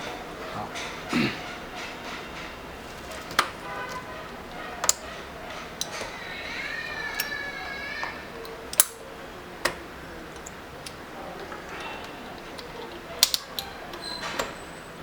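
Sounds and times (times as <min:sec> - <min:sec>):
mechanical keyboard clicks: 0:08.4 - 0:14.5.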